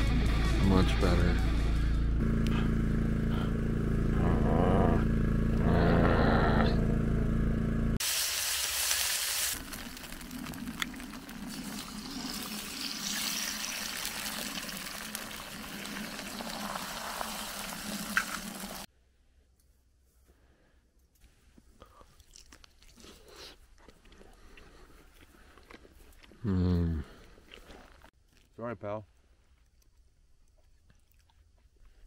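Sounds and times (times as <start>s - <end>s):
background music: 0.0s - 2.2s
steady sizzling hiss: 8.0s - 18.9s.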